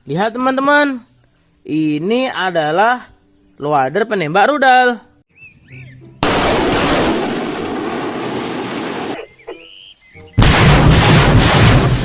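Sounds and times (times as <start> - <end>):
missile launch blasts: 6.2 - 9.2, 10.4 - 12.0.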